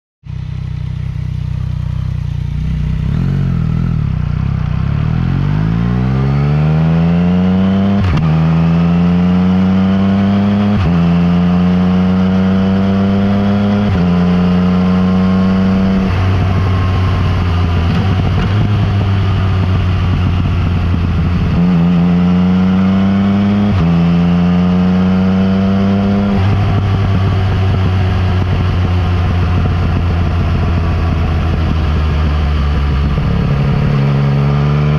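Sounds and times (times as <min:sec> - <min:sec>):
motorcycle engine revving through upshifts: 0:00.3 - 0:34.9.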